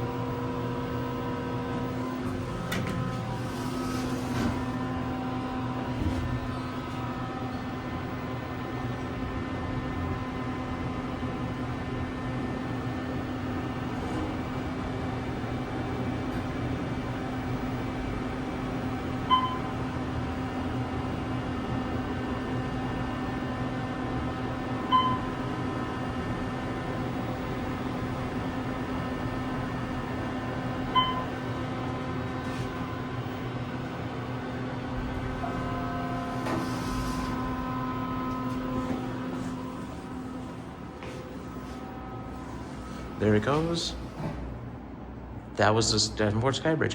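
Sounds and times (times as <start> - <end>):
elevator hum: 0.0 - 46.6
electronic elevator chime: 19.3 - 19.8, 24.9 - 25.4, 30.9 - 31.4.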